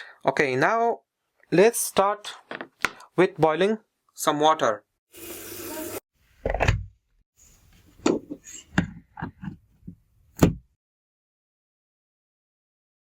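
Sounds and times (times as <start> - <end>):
objects knocking and clunking: 7.7 - 10.7.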